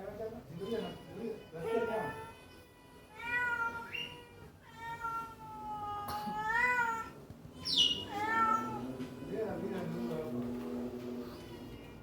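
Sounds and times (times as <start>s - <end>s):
cat meowing: 1.6s - 9.4s.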